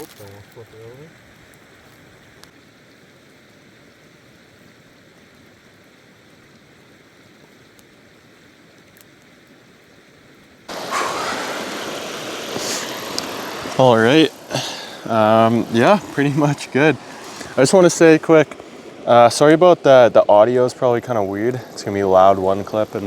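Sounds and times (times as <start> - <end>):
meat sizzling on coals: 0.0 - 9.9, 10.7 - 23.0
small crackles: 0.0 - 23.0
loud rushing noise: 10.7 - 19.5.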